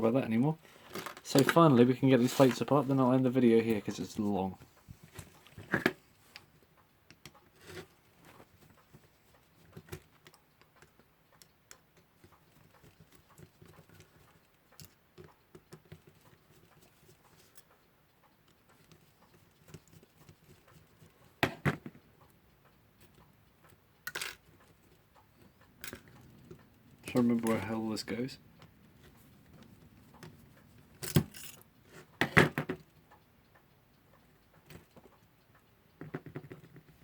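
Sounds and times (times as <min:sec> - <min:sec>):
clicks and taps of metal parts: 0:23.0 - 0:27.8.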